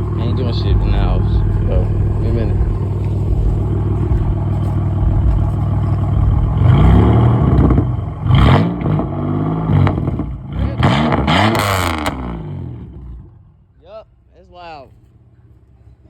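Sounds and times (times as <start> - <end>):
loud engine revving: 0.0 - 13.4.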